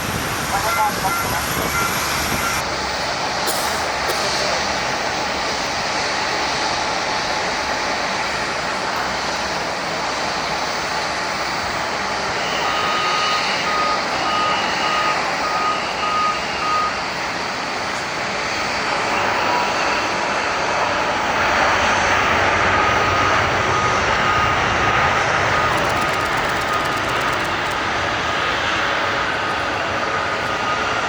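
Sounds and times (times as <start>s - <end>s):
high whining tones: 0.0s - 2.6s, 25.6s - 27.8s
jet engines running: 0.0s - 7.3s, 23.9s - 30.6s.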